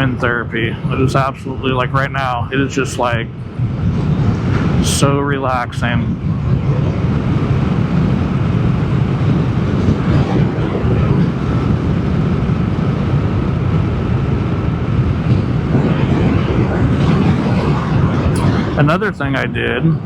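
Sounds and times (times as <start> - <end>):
faint steady whine: 0.0 - 20.0
wind rush: 0.0 - 20.0
road rumble: 6.1 - 19.4.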